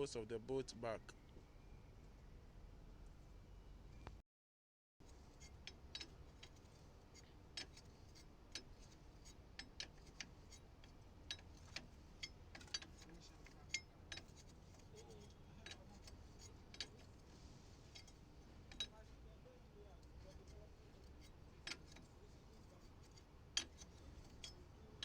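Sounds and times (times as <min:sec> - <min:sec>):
hand tools clicking on metal: 0:08.5 - 0:17.2, 0:18.0 - 0:19.0, 0:20.0 - 0:25.0.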